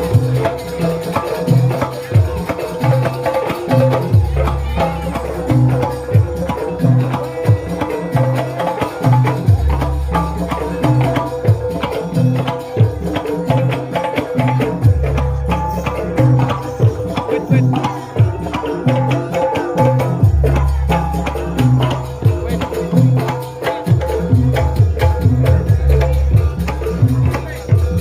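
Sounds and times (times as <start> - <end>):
hand drums fast rhythm: 0.0 - 28.0
held melodic tone: 0.0 - 28.0.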